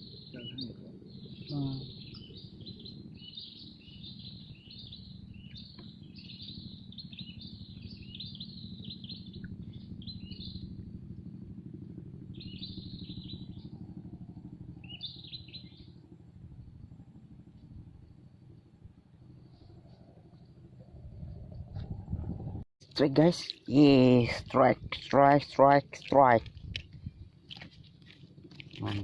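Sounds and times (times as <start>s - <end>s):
small birds chirping: 0.0s - 10.9s, 12.3s - 13.8s, 14.8s - 16.0s
steady low hum: 0.0s - 29.0s.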